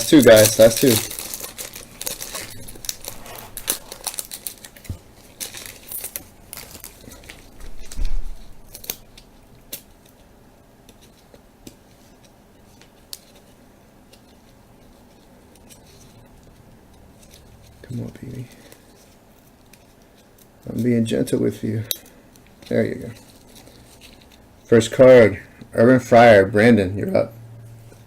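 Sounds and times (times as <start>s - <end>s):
foil wrapper crinkling: 0.0s - 10.3s, 12.2s - 21.1s, 22.4s - 25.0s.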